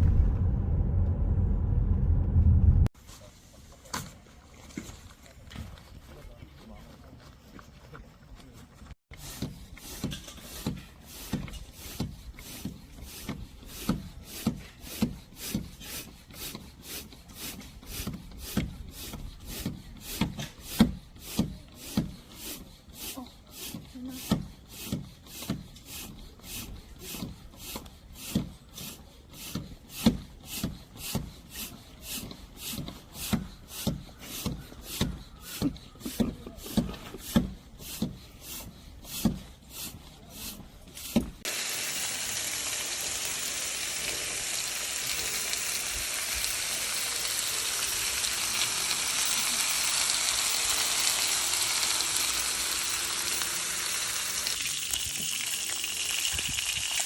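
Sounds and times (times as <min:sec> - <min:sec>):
rubbing strokes on wood: 0:09.1 - 0:54.4
food sizzling: 0:41.4 - 0:57.0.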